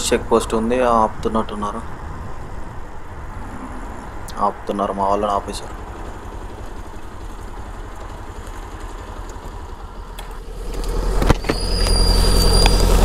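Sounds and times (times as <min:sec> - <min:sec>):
motorcycle engine idling: 0:04.1 - 0:13.0.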